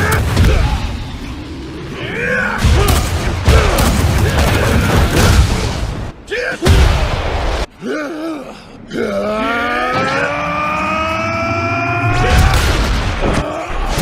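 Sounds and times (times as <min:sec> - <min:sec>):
shouted grunts: 0:07.8 - 0:14.0.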